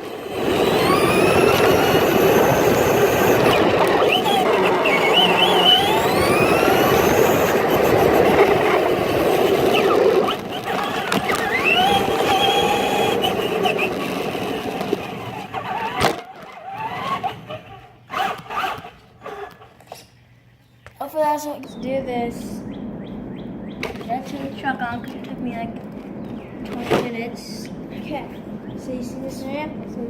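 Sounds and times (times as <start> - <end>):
rc truck motor whining: 0.0 - 20.0
wheels rumbling on ground: 0.0 - 20.2, 20.8 - 30.0.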